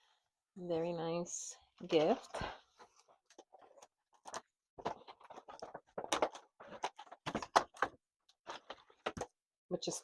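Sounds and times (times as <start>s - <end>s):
packaging rustling and scraping: 1.8s - 9.3s.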